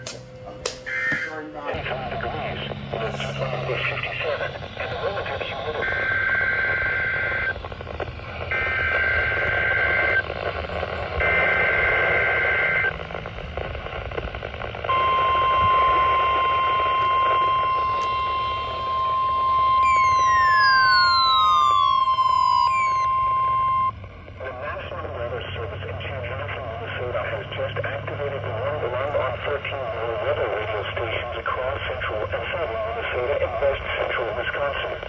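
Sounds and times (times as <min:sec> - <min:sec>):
radio static: 0:00.0 - 0:35.0
steady alarm tone: 0:14.9 - 0:24.1
tone gliding down in pitch: 0:16.9 - 0:23.9
digital alert data tones: 0:17.1 - 0:23.9.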